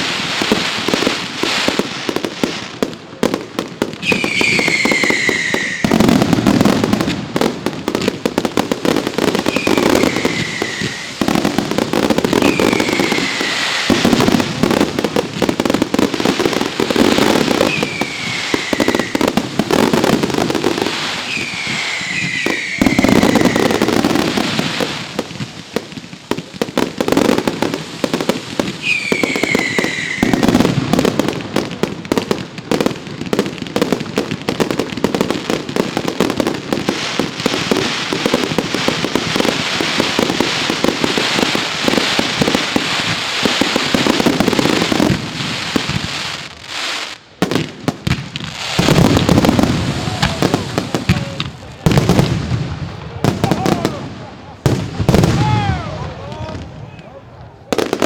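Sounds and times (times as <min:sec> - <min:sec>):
firework crackling: 0:00.0 - 0:58.0
falling firework whistles: 0:04.0 - 0:07.0, 0:09.3 - 0:14.4, 0:16.6 - 0:25.0, 0:28.1 - 0:31.0.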